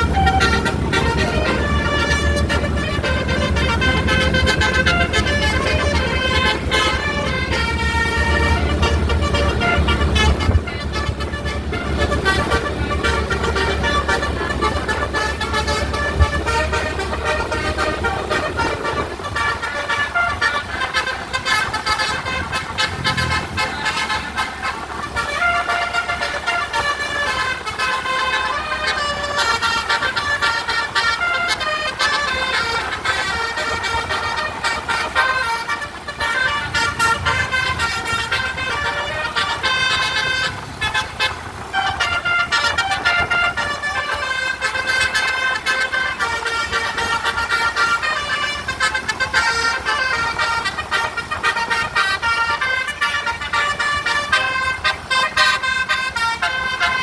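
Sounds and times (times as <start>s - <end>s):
low rumble: 0.0s - 19.9s, 20.8s - 25.7s
engine and traffic rumble: 0.0s - 57.0s
tuned bus air horns: 0.0s - 57.0s.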